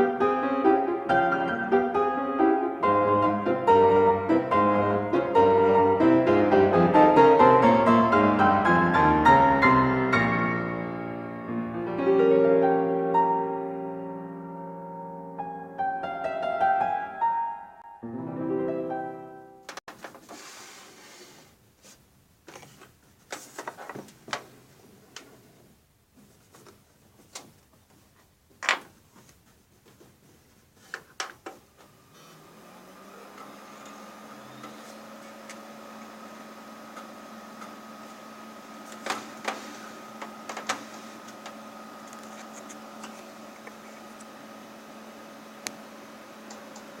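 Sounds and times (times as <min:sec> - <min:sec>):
computer fans humming: 0:31.2 - 0:47.0.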